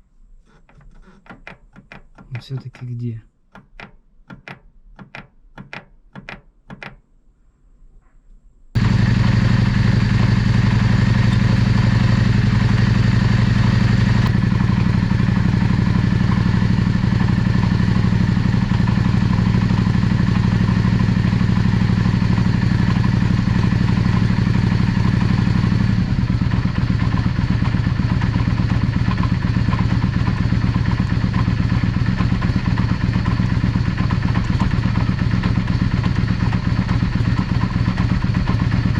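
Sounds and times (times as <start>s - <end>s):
motorcycle engine idling: 8.8s - 38.9s.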